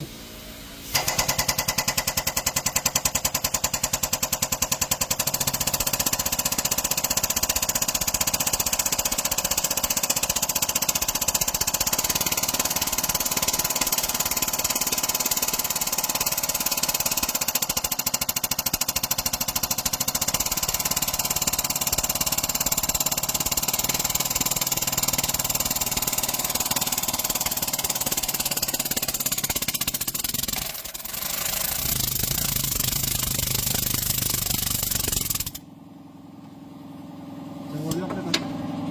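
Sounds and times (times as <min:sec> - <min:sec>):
pneumatic air hammer: 0:00.0 - 0:35.7.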